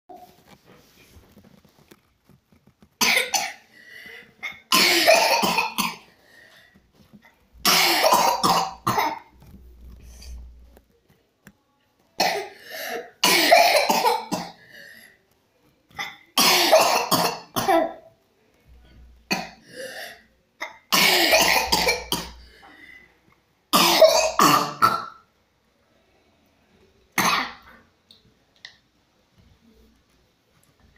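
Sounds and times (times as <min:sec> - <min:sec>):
breathing sounds: 0:03.6 - 0:04.4, 0:06.1 - 0:06.9, 0:14.6 - 0:15.2, 0:22.4 - 0:23.3.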